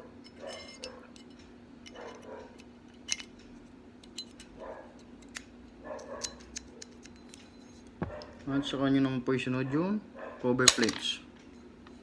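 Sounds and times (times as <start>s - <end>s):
metal gun parts clicking: 0.2s - 3.4s, 4.0s - 7.6s, 10.6s - 11.2s.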